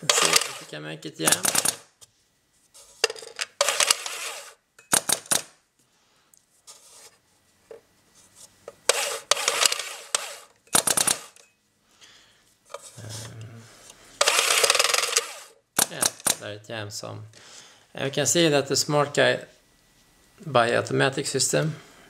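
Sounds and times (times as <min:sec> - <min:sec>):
paintball loader drive spinning: 0:00.0 - 0:00.7, 0:03.6 - 0:05.4, 0:08.8 - 0:11.4, 0:14.2 - 0:16.3
rubber balls rattling and clicking: 0:14.2 - 0:16.4.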